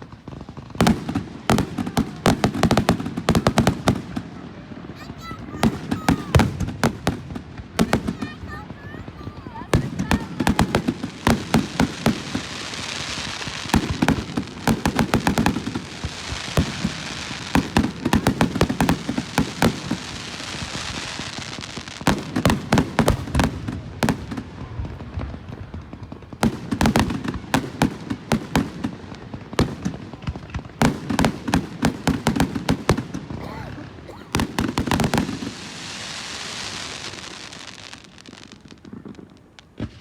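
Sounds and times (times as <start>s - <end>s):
fireworks crackling pops: 0.0s - 40.0s
fireworks hiss: 5.5s - 26.1s, 31.0s - 40.0s.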